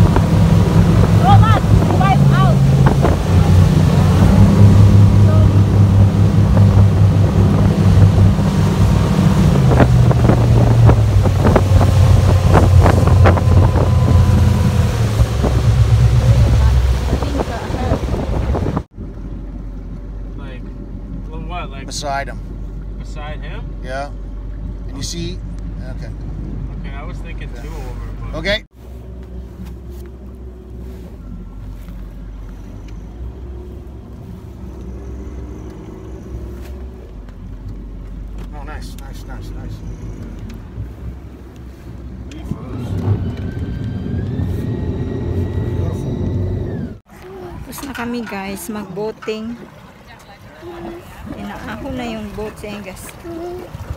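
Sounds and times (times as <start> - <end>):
wind buffeting microphone: 0.0 - 19.1, 39.9 - 53.9
water slapping hull: 0.0 - 20.2, 23.7 - 53.9
motorboat engine running: 0.0 - 53.9.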